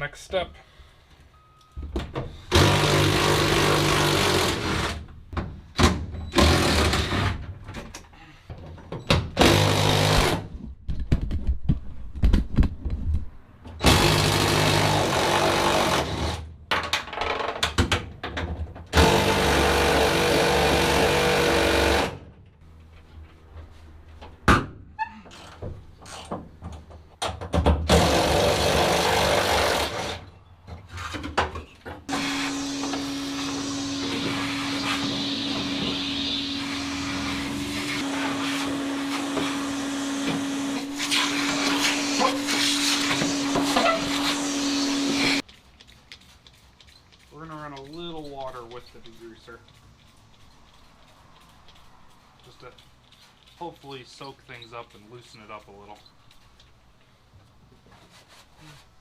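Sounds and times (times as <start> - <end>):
air blower rushing with motor hum: 32.1 - 45.4.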